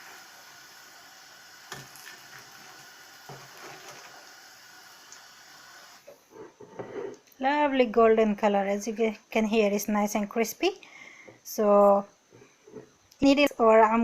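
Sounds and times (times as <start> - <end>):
hot oil sizzling: 0.0 - 6.0.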